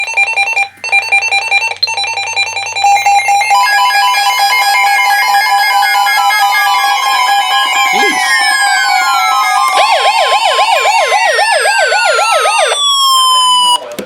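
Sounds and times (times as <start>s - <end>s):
pulsing two-note electronic alarm: 0.9s - 13.8s
steady layered tones: 2.8s - 13.8s
falling siren-like sweep: 3.5s - 13.8s.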